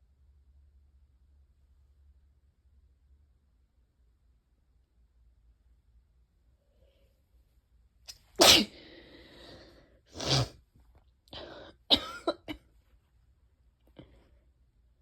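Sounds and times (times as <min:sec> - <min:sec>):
person sneezing: 0:08.1 - 0:10.6, 0:11.4 - 0:12.6.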